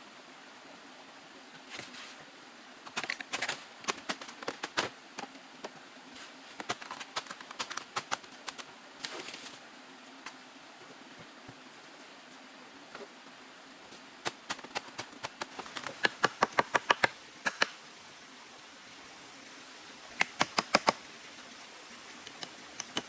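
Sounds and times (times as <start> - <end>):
clicks and snaps of hand work: 14.3 - 17.8, 20.2 - 21.0, 22.3 - 23.0.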